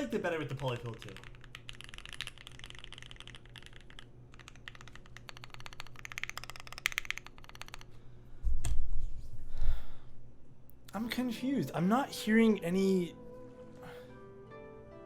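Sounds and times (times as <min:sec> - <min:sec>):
mechanical keyboard typing: 0:00.1 - 0:07.9.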